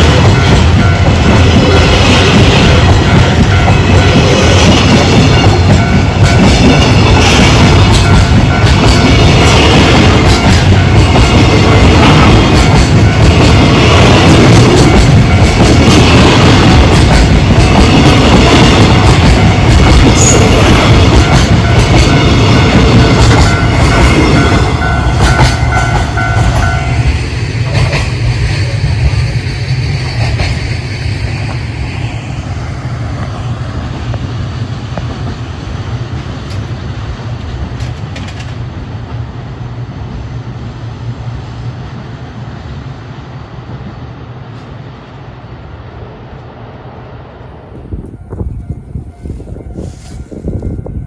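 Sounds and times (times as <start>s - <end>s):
freight train rumble: 0.0s - 51.0s
level crossing warning bell: 5.1s - 7.2s, 7.8s - 9.5s, 19.3s - 27.2s.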